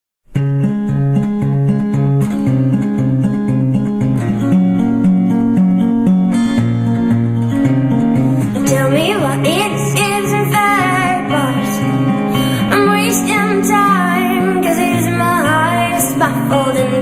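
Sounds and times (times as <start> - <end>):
acoustic guitar repeating pattern: 0.3 - 17.0
vocals: 8.4 - 17.0.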